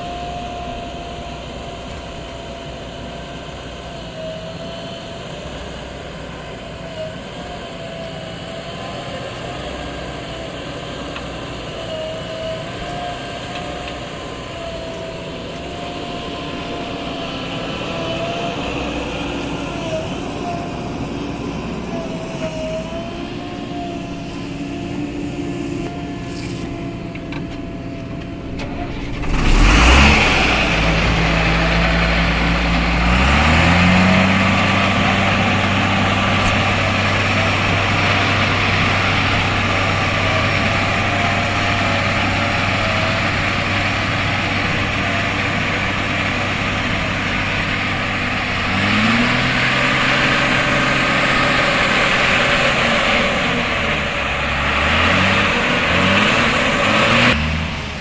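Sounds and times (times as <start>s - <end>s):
heavy diesel engine revving: 0.0s - 58.0s.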